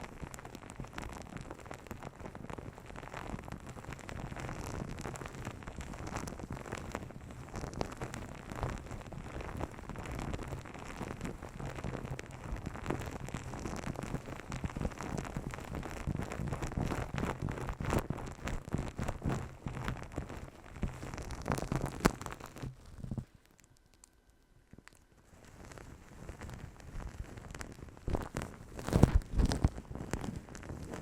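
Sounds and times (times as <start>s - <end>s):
hands rubbing over microphone: 25.2s - 31.0s.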